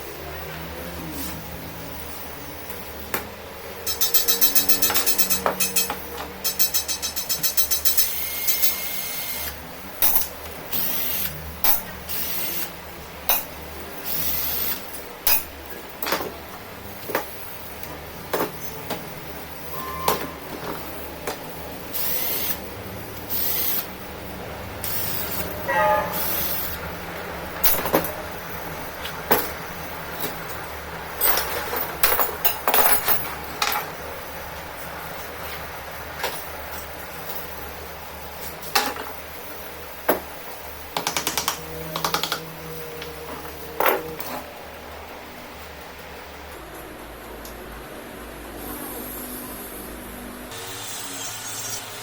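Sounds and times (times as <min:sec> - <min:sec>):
tools clicking and knocking: 0:03.9 - 0:08.8, 0:40.9 - 0:44.4
metal scraping bursts: 0:24.8 - 0:26.9.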